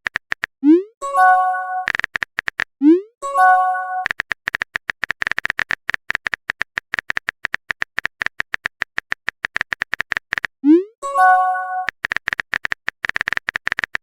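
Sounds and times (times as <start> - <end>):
bright message chime: 1.0 - 1.9, 3.2 - 4.0, 11.0 - 11.9
phone keyboard typing taps: 1.8 - 2.7, 4.0 - 10.5, 11.8 - 14.0.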